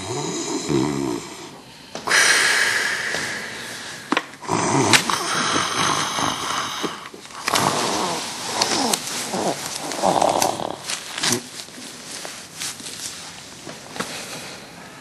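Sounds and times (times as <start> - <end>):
snoring rasping breaths: 0.0 - 11.4.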